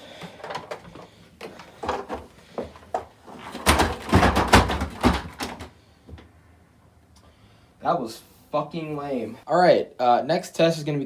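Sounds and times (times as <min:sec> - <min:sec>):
vacuum cleaner tumbling down stairs: 0:00.0 - 0:05.7.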